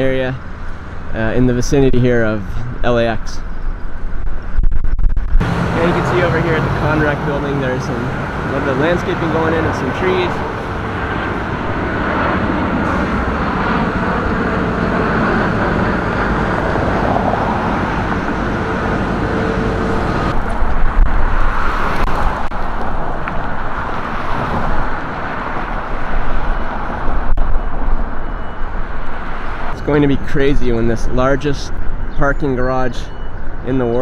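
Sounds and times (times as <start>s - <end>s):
road traffic noise: 0.0s - 4.6s, 5.2s - 34.0s
rough low rumble: 0.0s - 32.0s.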